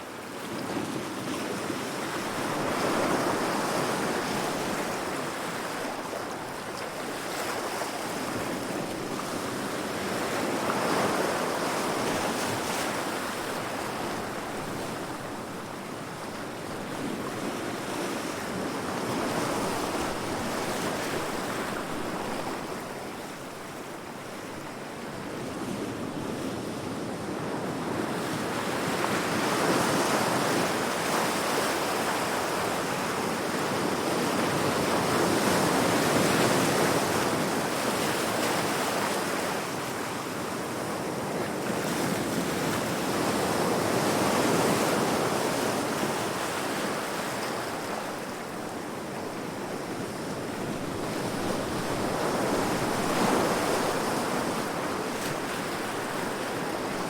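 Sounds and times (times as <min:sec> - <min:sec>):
ocean waves crashing against rocks: 0:40.5 - 0:57.0.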